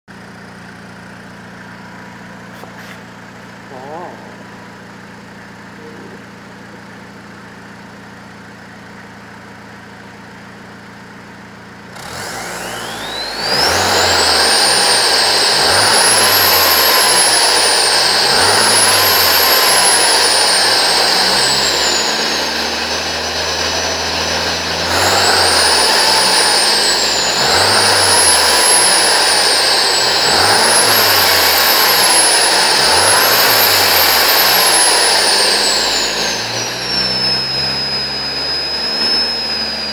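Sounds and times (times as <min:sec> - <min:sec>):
turbocharged engine revving: 0:00.6 - 0:07.7, 0:11.8 - 0:39.9
turbo whistle: 0:12.4 - 0:39.9.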